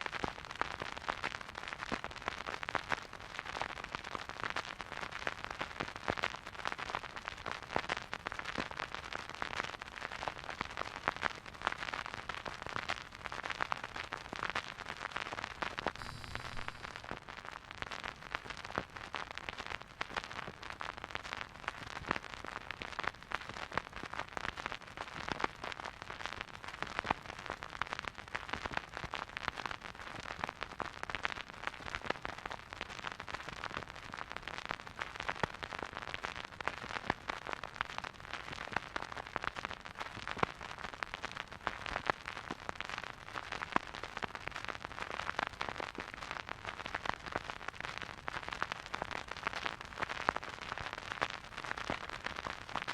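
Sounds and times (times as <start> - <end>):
vinyl record crackling and popping: 0.0 - 52.9
soft hiss: 16.0 - 17.1.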